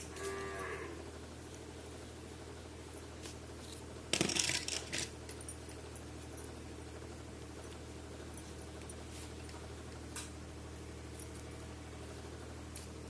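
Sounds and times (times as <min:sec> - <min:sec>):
steady low hum: 0:00.0 - 0:13.0
plastic toy pieces clattering: 0:04.1 - 0:05.1.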